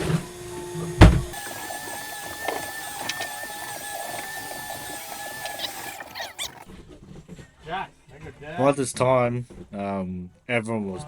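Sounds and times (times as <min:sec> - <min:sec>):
fishing reel motor whining: 0:01.3 - 0:06.6.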